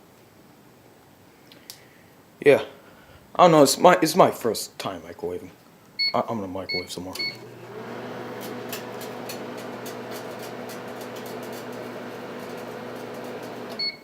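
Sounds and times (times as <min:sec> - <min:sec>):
microwave oven hum: 0:06.7 - 0:14.0.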